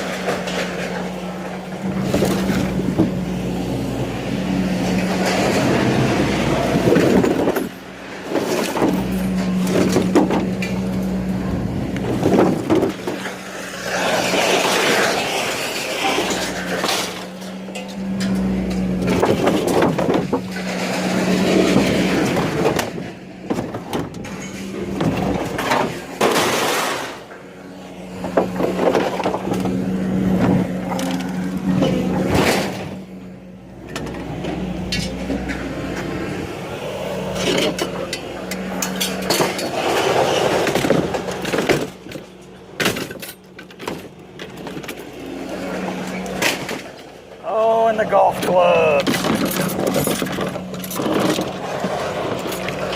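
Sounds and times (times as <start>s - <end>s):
scrap metal clattering: 4.2s - 33.1s, 37.1s - 47.2s.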